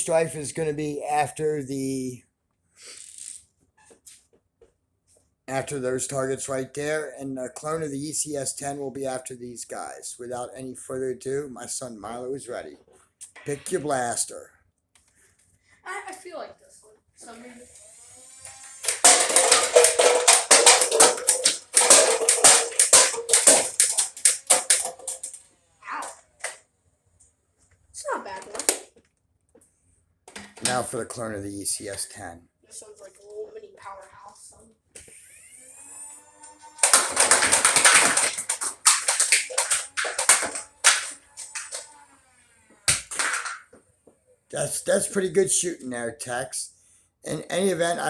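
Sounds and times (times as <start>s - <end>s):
flywheel motors humming: 17.3s - 22.4s, 35.1s - 38.0s
foam-dart blaster firing: 18.8s - 25.1s
darts hitting cans and cups: 18.8s - 25.4s, 36.8s - 42.0s, 42.9s - 43.8s.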